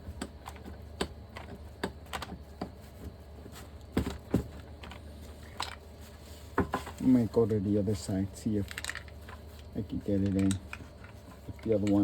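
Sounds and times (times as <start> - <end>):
metal tools clicking and tapping: 10.2 - 12.0.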